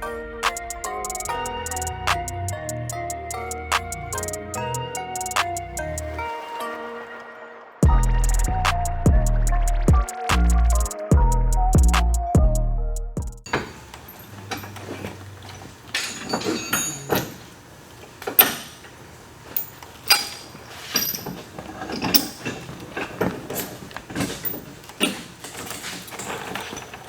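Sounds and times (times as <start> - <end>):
tools and metal parts clanking: 0.5 - 6.2, 13.5 - 27.0.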